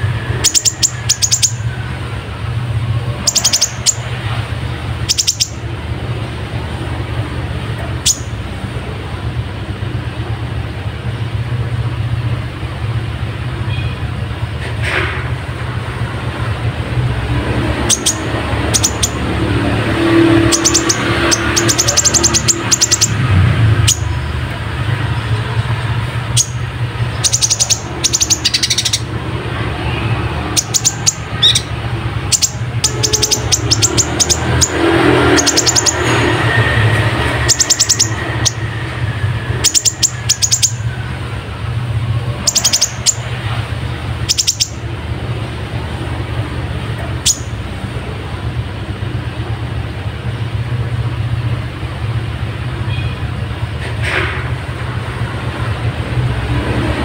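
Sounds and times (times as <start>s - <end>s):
sunbird high chirps and trills: 0.0s - 1.8s, 3.0s - 8.5s, 17.7s - 25.4s, 26.0s - 41.1s, 42.2s - 47.7s.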